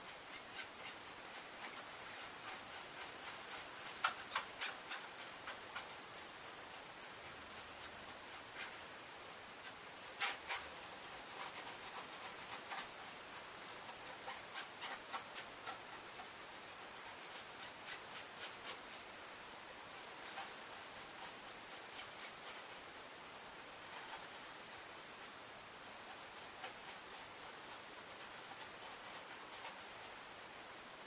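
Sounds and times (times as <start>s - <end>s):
light clicks and ticks: 0.0s - 24.6s
cloth towel rubbing plastic: 0.0s - 31.0s.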